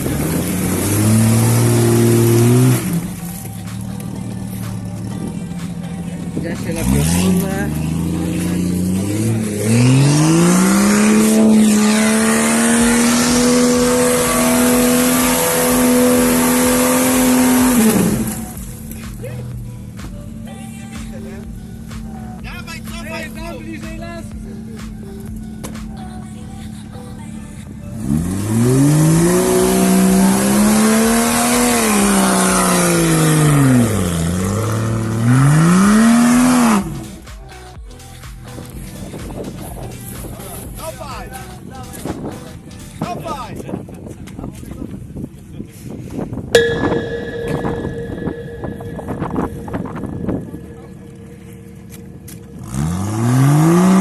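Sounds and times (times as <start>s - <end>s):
engine revving: 0.0s - 3.4s, 6.6s - 18.6s, 28.0s - 37.0s
engine revving hard: 8.8s - 18.4s.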